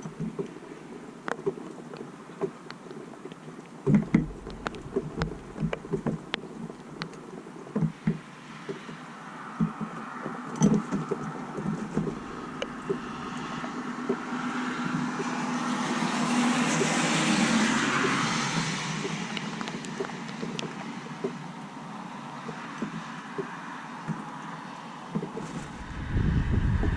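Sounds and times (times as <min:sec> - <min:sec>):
tyres hissing on wet road: 0:12.2 - 0:19.9.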